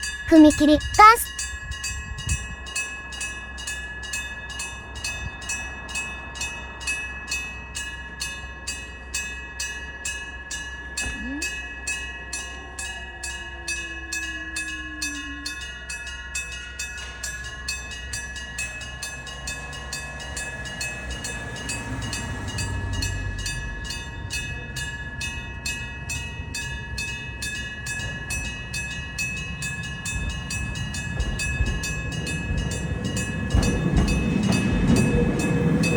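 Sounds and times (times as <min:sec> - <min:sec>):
railroad crossing bell clanging: 0:00.0 - 0:35.9
electric train rumbling past: 0:18.8 - 0:35.9.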